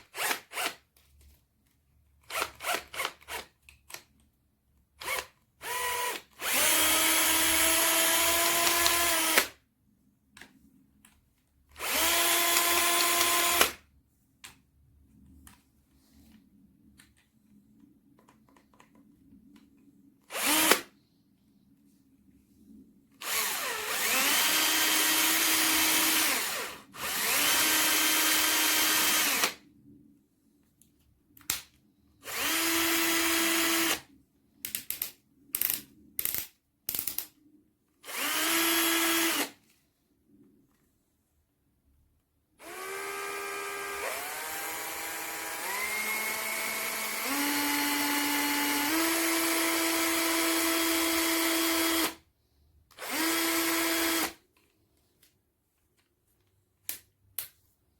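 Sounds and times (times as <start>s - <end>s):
cordless drill motor whining: 5.0s - 9.5s, 11.8s - 13.8s, 20.3s - 20.9s, 23.2s - 29.6s, 32.2s - 34.0s, 38.0s - 39.5s, 42.6s - 52.2s, 53.0s - 54.4s.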